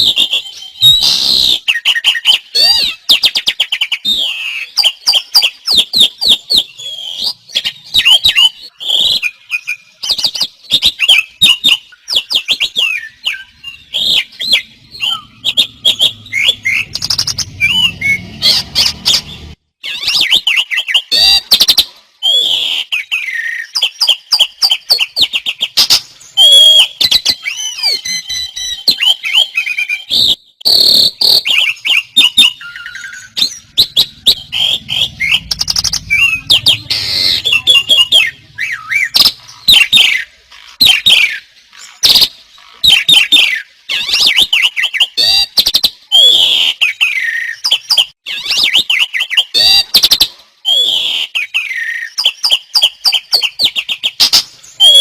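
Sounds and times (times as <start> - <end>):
songbirds singing: 0.0 - 55.0.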